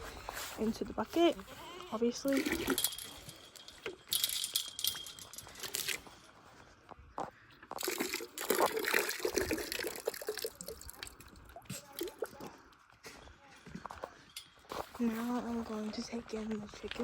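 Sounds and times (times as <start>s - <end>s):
water pouring into a bucket: 7.8s - 12.4s.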